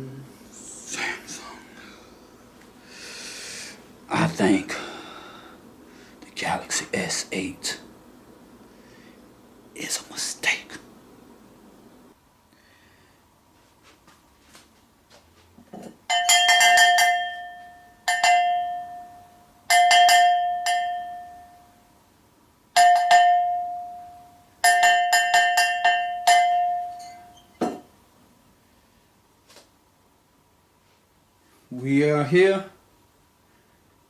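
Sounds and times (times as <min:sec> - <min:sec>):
small bell ringing: 0:16.1 - 0:21.8, 0:22.8 - 0:27.5.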